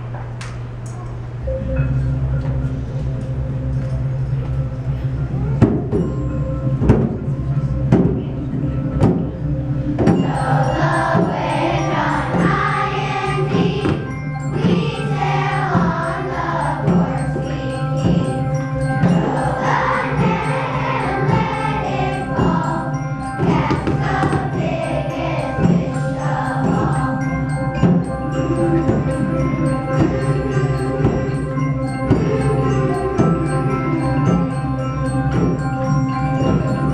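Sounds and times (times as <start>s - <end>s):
held low instrumental notes: 0.0s - 36.9s
soft knocking beat: 7.9s - 8.3s, 9.0s - 9.4s, 23.4s - 24.8s
children's choir singing: 10.0s - 36.9s.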